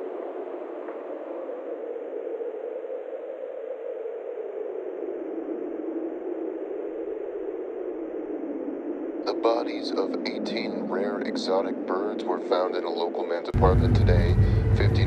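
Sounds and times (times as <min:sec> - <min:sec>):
static-like rushing noise: 0:09.2 - 0:15.0.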